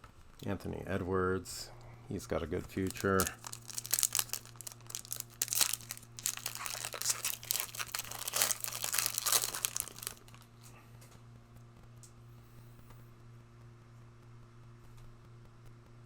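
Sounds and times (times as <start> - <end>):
faint low hum: 0.0 - 16.0
foil wrappers crinkling: 2.7 - 10.6.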